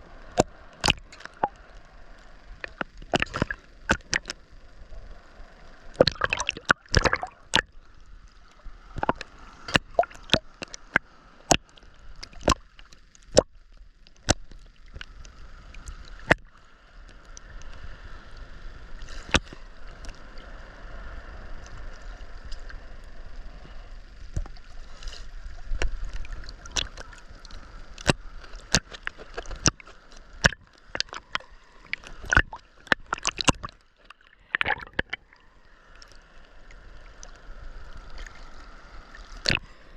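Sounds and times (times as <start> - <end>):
seawater splashing and sloshing: 5.9 - 7.7, 24.5 - 36.2.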